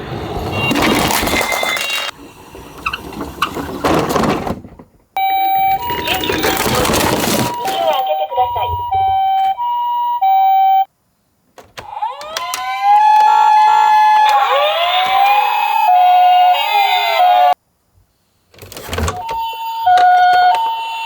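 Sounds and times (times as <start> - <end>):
ambulance sirens wailing: 5.2 - 10.9, 11.8 - 17.6, 19.1 - 21.0.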